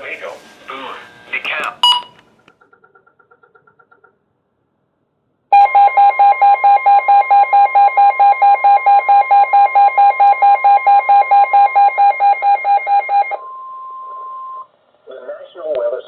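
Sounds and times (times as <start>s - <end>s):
steady warning alarm tone: 0.0s - 2.2s
radio alarms beeping rapidly: 1.2s - 2.2s, 5.6s - 13.4s.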